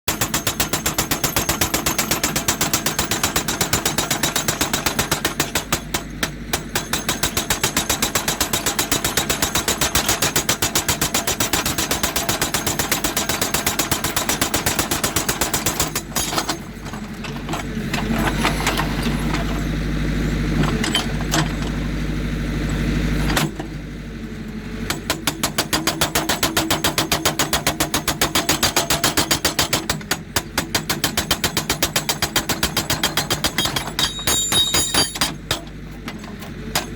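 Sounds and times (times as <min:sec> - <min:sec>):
hydraulic breaker hammering rock: 0:00.1 - 0:23.8, 0:24.8 - 0:36.9
diesel engine running: 0:00.6 - 0:36.9.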